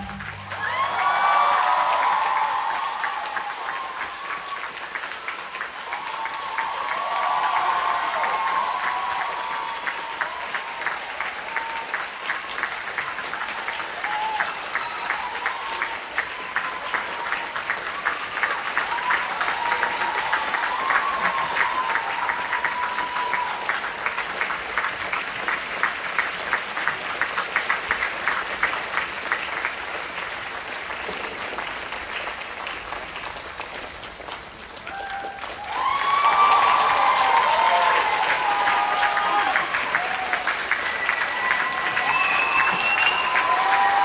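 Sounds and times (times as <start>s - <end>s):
cheering voices: 0.0s - 24.4s, 34.8s - 44.0s
audience applauding: 0.0s - 44.0s.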